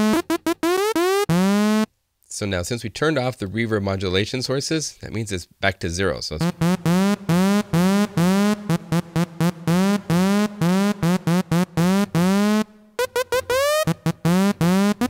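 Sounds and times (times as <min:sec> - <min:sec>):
synthesizer lead swooping notes: 0:00.0 - 0:01.9, 0:06.4 - 0:15.0.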